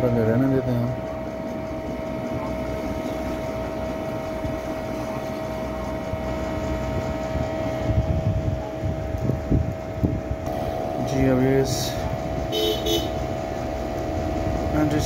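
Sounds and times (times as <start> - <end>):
mechanical hum: 0.0 - 15.0
mid-pitched whine: 0.0 - 15.0
low rumbles: 0.8 - 15.0.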